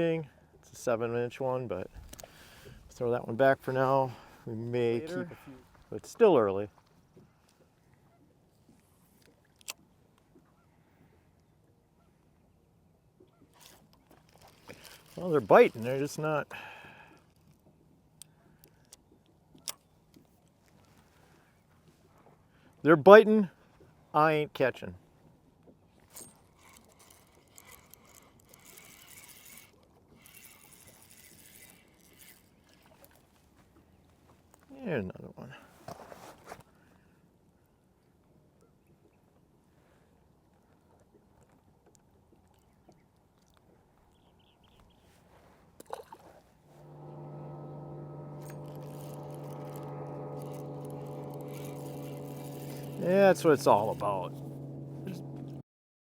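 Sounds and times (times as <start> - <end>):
boat motor humming: 13.4 - 18.1, 46.6 - 55.6
fishing reel clicking: 13.6 - 17.6, 26.1 - 33.2, 46.8 - 55.6.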